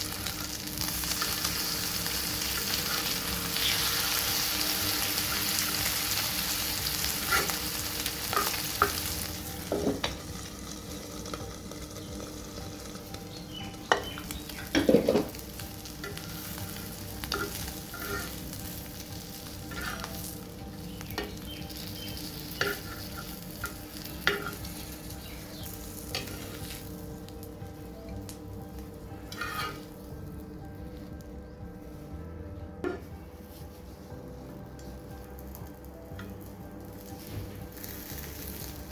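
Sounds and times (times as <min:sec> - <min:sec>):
food sizzling in a pan: 0:00.0 - 0:31.2, 0:34.7 - 0:38.9
utensil scraping a pan: 0:07.0 - 0:09.2, 0:17.2 - 0:18.6, 0:19.6 - 0:20.3, 0:22.2 - 0:25.0, 0:29.2 - 0:30.0.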